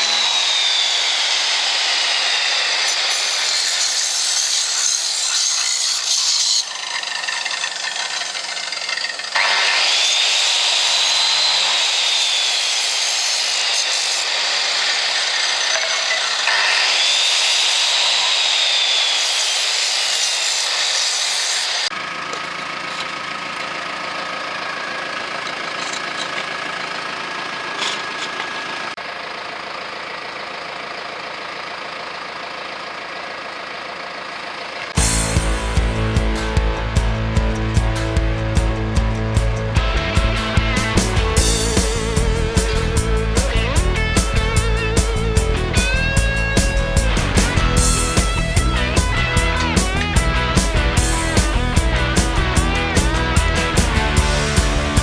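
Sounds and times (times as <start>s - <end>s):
power tool grinding metal: 0.0s - 23.8s, 24.5s - 29.0s, 34.7s - 55.0s
steady machine hum: 34.9s - 55.0s.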